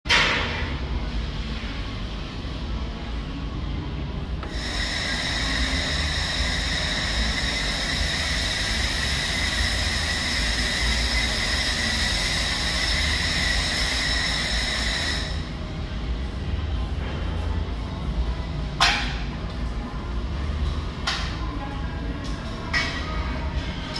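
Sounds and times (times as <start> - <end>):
low machine hum: 0.1 - 23.9
high-pitched whine: 0.5 - 16.9
welder hissing: 4.4 - 15.5.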